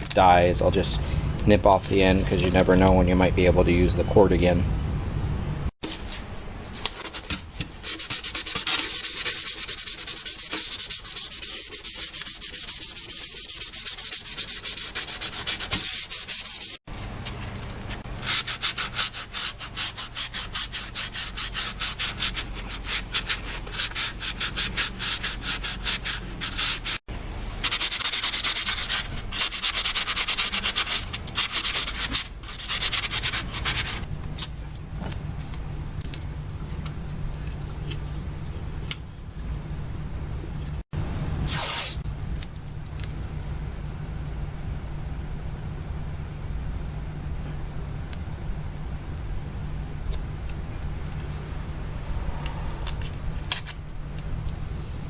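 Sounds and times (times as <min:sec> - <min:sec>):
hand sanding strokes: 0:07.8 - 0:16.8, 0:18.0 - 0:27.0, 0:27.6 - 0:34.1.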